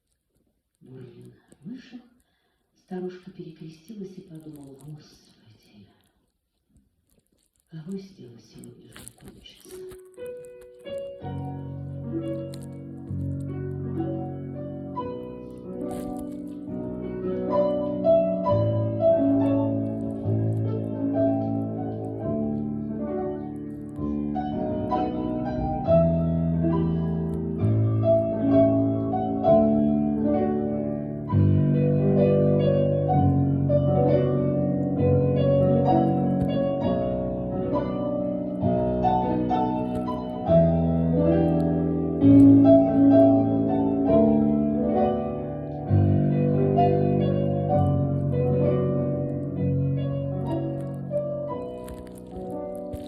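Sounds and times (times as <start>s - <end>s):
piano chords over bass notes: 10.4s - 53.0s.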